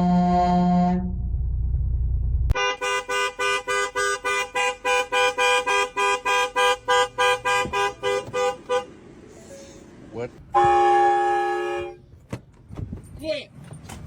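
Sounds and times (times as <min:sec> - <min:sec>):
low rumble: 0:00.0 - 0:02.6
car horn tooting: 0:02.5 - 0:09.0, 0:10.5 - 0:12.1.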